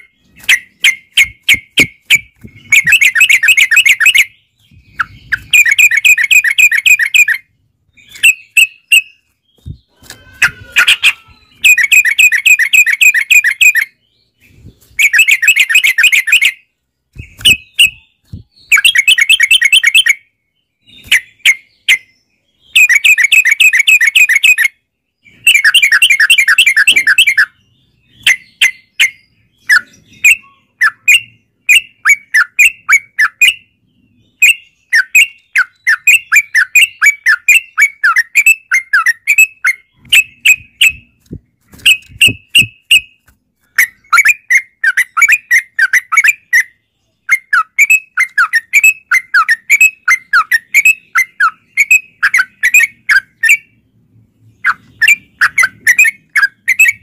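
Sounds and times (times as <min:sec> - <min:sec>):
bird chirps: 0:00.0 - 0:57.0
bird singing rolling trills: 0:00.0 - 0:57.0.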